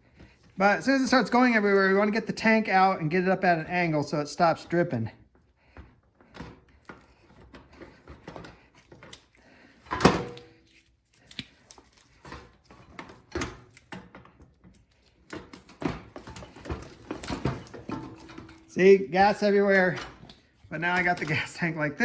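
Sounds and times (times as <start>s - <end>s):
knocks and clatter of metal parts: 9.8s - 10.6s, 12.2s - 21.8s.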